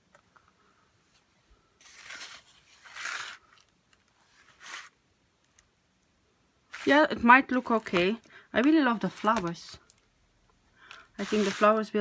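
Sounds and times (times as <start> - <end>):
canvas and packaging crinkling: 1.8 - 3.8, 6.7 - 10.0, 10.8 - 12.0.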